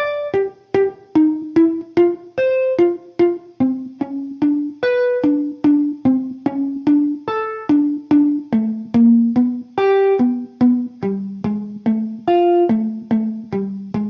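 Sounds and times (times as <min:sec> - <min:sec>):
guitar picking slow notes: 0:00.0 - 0:14.0.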